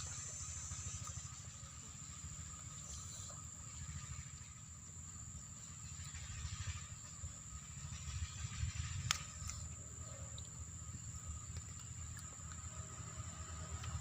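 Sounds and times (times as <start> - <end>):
insects droning: 0.0 - 14.0.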